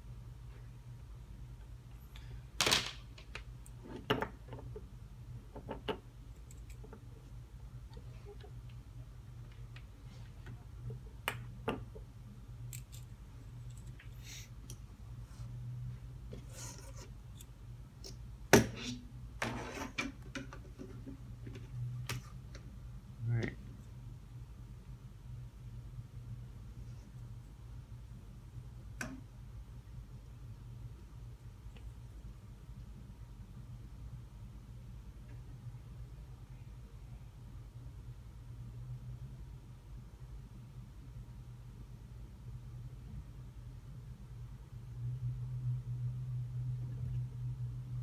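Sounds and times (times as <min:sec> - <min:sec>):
low steady hum: 0:00.0 - 0:48.0.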